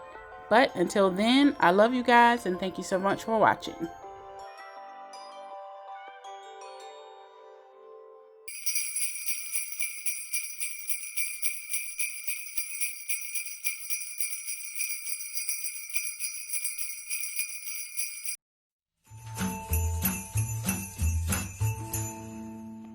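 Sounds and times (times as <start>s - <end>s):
christmas music with bass beat: 8.5s - 18.4s, 19.2s - 22.4s
sleigh bells jingling: 8.5s - 18.4s, 19.2s - 22.4s.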